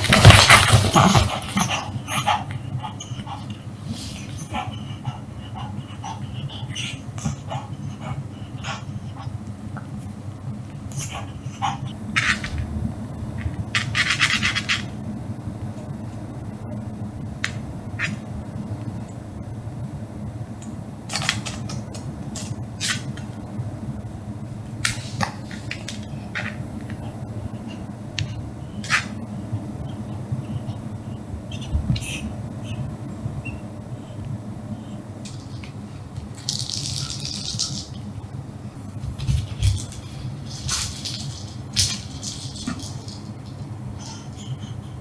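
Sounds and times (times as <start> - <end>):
cat toy rustles and clicks: 0.0 - 1.8, 35.2 - 38.2, 38.8 - 45.0
steady low hum: 0.0 - 45.0
scratching and scraping: 39.0 - 45.0.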